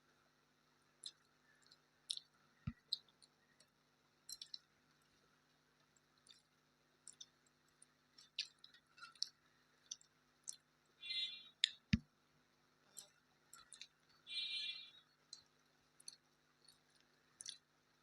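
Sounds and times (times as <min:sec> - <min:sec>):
mouth clicks and chewing: 0:01.0 - 0:05.2, 0:05.8 - 0:10.7, 0:11.5 - 0:12.0, 0:12.8 - 0:14.6, 0:15.3 - 0:17.7.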